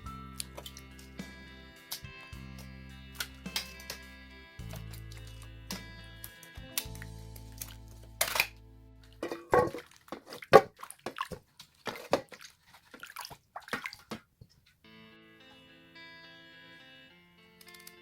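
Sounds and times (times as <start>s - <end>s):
soft background music: 0.0s - 9.8s, 14.8s - 18.0s
water splashing and sloshing: 7.5s - 8.5s, 9.2s - 14.7s.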